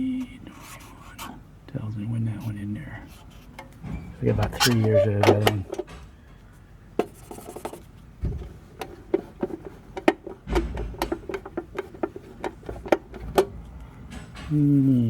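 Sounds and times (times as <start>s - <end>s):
rubbing: 3.0s - 5.7s
dull thumps: 3.8s - 6.2s, 8.2s - 13.6s.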